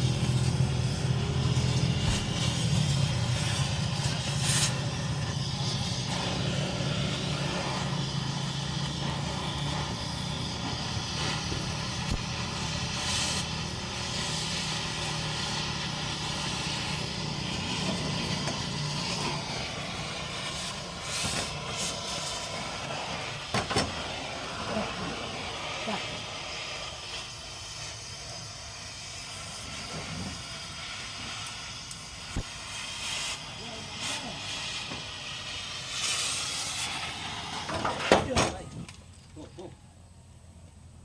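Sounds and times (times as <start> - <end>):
engine humming: 0.0 - 27.4.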